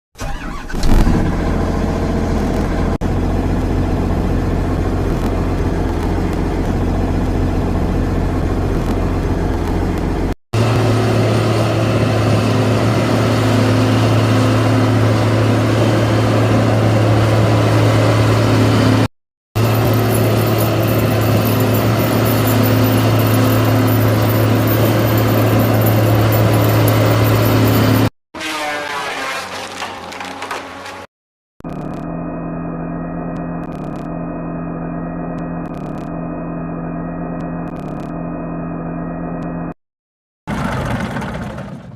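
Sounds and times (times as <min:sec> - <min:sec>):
diesel engine running: 0:00.2 - 0:31.1, 0:40.5 - 0:41.9
strong steady hum: 0:01.2 - 0:28.7, 0:31.6 - 0:39.7.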